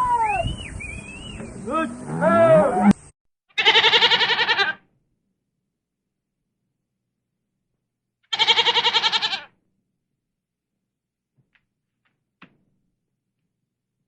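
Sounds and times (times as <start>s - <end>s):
farm animal bleating: 3.5s - 4.8s, 8.3s - 9.5s.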